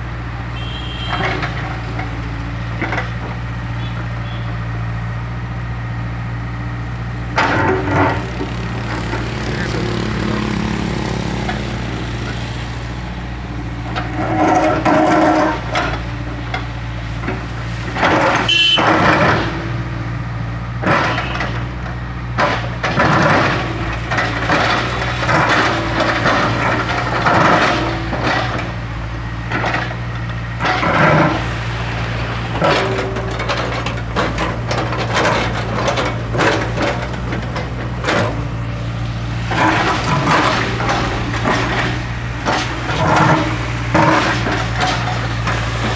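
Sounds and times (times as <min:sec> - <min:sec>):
excavator diesel engine running: 0:00.0 - 0:45.9
bucket scraping broken concrete: 0:14.0 - 0:16.1, 0:22.9 - 0:28.8, 0:29.5 - 0:45.9.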